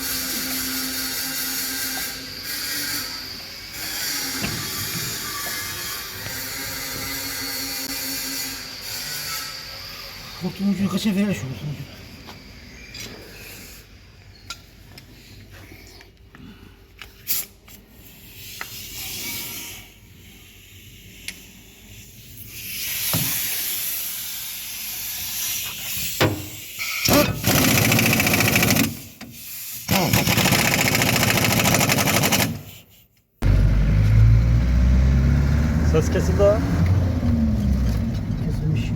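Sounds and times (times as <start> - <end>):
air tool hissing and rattling: 0.0 - 9.3, 17.0 - 19.6, 20.4 - 33.1.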